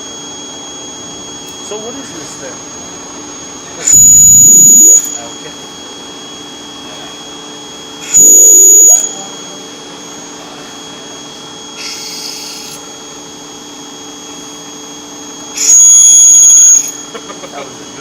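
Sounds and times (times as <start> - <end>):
machine humming: 0.0 - 18.0
piercing high-pitched shriek: 3.8 - 5.6, 7.9 - 10.4, 11.6 - 13.2, 15.5 - 17.1.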